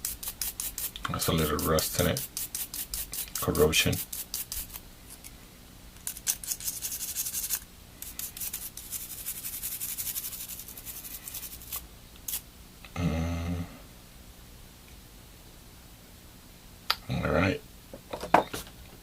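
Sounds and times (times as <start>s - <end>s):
toothbrush scrubbing metal contact: 0.0s - 5.2s, 6.0s - 12.4s.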